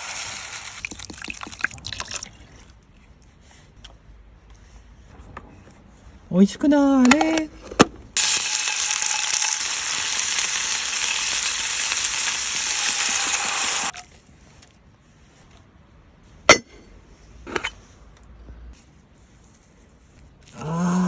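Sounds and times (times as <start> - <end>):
fish sizzling: 0.0 - 1.9, 8.2 - 14.0.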